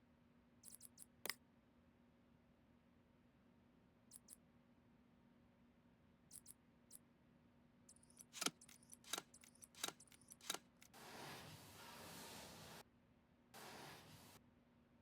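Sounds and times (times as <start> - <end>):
small hard parts clicking: 7.9 - 11.0.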